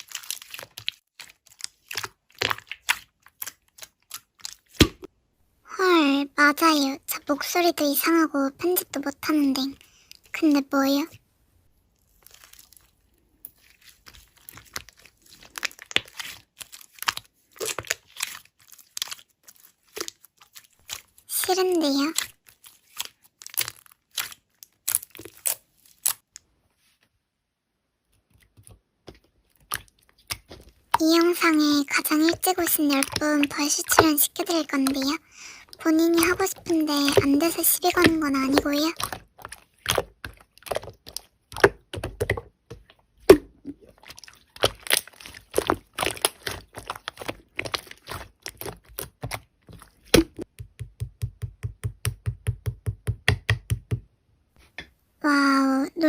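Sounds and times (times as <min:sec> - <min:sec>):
slime crackling and popping: 0:00.0 - 0:05.1, 0:12.0 - 0:26.3, 0:29.6 - 0:42.6, 0:43.3 - 0:50.5.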